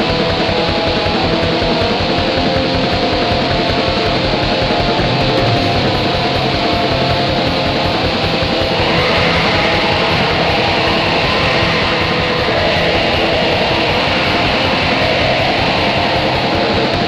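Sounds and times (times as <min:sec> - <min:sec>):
distorted guitar: 0:00.0 - 0:17.0
rapid drumming: 0:00.0 - 0:17.0.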